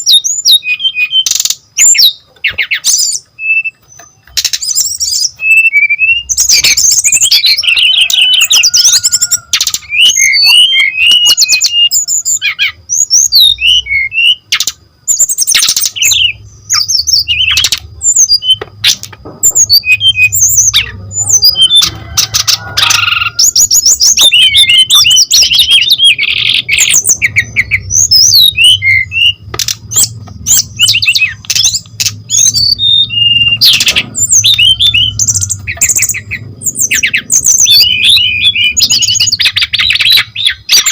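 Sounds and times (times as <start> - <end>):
sharp clicks in birdsong: 0.0 - 12.0, 13.3 - 21.0, 24.1 - 40.9
bird singing trills: 0.0 - 40.9.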